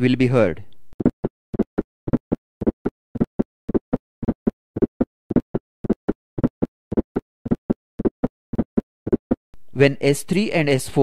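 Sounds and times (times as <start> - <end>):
heart sounds gallop rhythm: 1.0 - 9.4.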